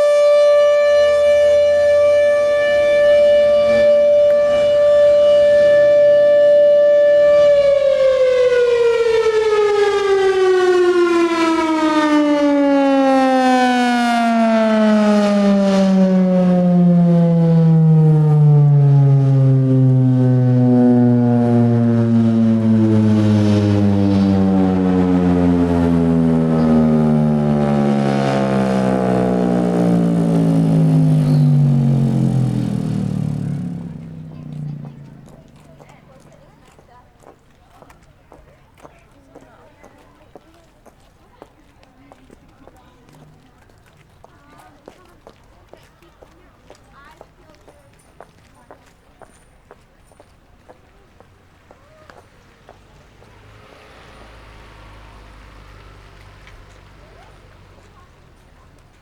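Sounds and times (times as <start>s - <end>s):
civil defense siren: 0.0s - 36.8s, 53.4s - 58.4s.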